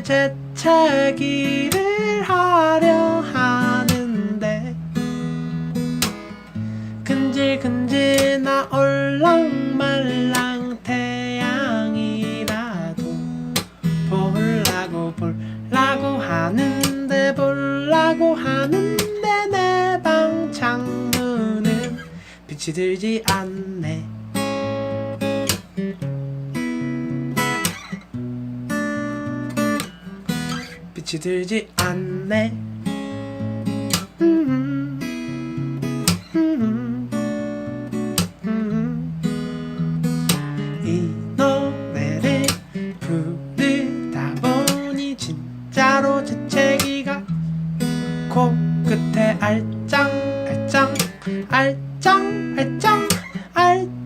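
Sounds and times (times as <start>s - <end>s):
person singing: 0.0s - 4.8s, 6.8s - 24.2s, 31.0s - 32.7s, 33.9s - 39.4s, 40.3s - 47.4s, 48.2s - 54.0s
strummed acoustic guitar: 0.0s - 54.0s.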